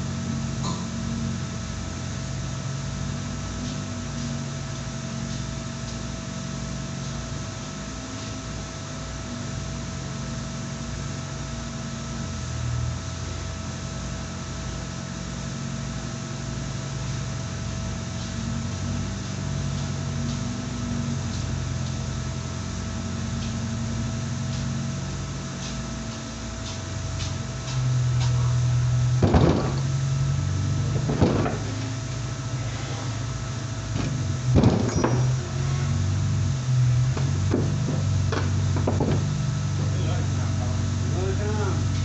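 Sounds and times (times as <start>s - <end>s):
machine humming: 0.0s - 42.0s.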